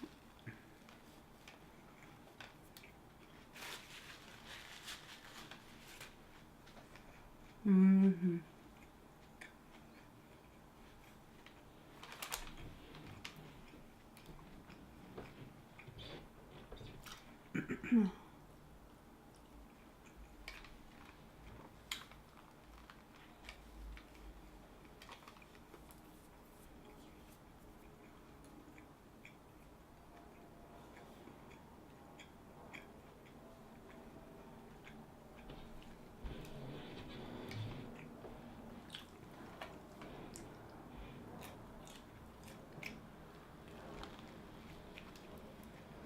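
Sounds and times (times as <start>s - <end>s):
faint chewing: 0.0s - 7.7s, 8.4s - 17.5s, 18.9s - 46.0s.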